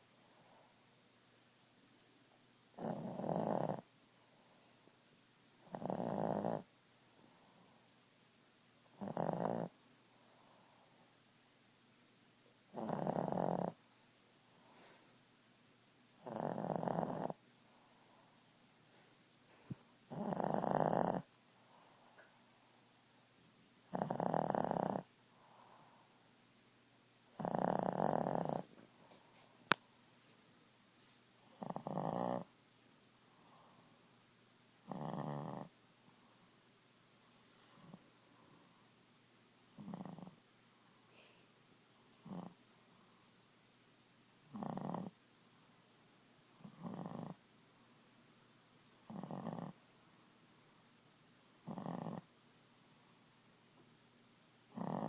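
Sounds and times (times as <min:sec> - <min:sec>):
dog snoring: 0:02.8 - 0:03.9, 0:05.5 - 0:06.7, 0:08.8 - 0:09.8, 0:12.7 - 0:13.9, 0:16.2 - 0:17.4, 0:18.9 - 0:21.4, 0:23.8 - 0:25.8, 0:27.3 - 0:28.8, 0:31.4 - 0:32.5, 0:34.8 - 0:35.8, 0:37.5 - 0:38.0, 0:39.7 - 0:40.4, 0:42.0 - 0:42.6, 0:44.4 - 0:45.2, 0:46.5 - 0:47.4, 0:48.9 - 0:49.8, 0:51.4 - 0:52.3, 0:54.7 - 0:55.0
faint breathing: 0:14.4 - 0:15.3, 0:17.6 - 0:20.0, 0:21.5 - 0:23.1, 0:25.2 - 0:26.3, 0:28.6 - 0:29.8, 0:33.2 - 0:34.1, 0:40.7 - 0:41.6.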